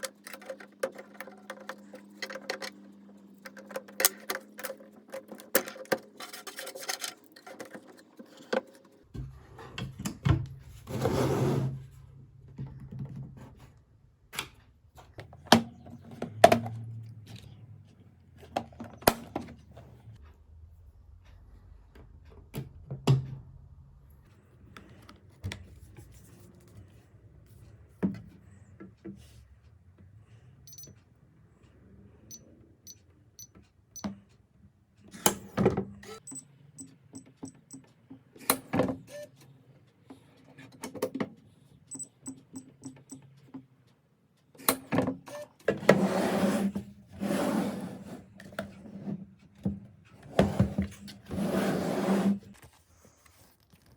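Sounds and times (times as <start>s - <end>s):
high electronic beeps: 30.7s - 30.9s.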